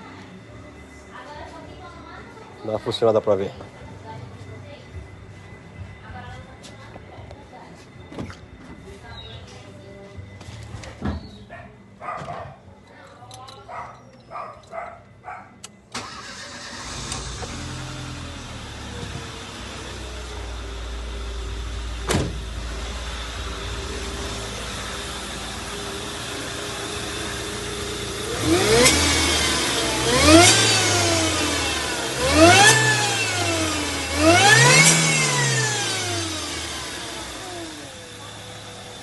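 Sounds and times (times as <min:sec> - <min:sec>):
car engine idling and revving: 0:15.6 - 0:39.0.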